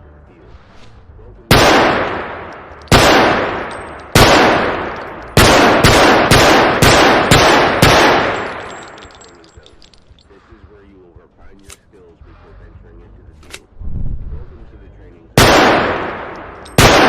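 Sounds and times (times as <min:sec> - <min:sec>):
pistol shots echoing: 0:01.5 - 0:09.5, 0:15.4 - 0:17.0.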